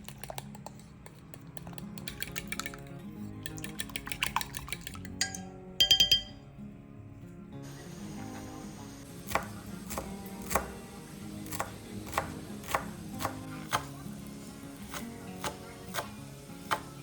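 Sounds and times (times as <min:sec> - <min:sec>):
background music: 0:01.5 - 0:17.0
knife chopping on a cutting board: 0:09.2 - 0:10.8, 0:11.4 - 0:14.0, 0:14.8 - 0:17.0.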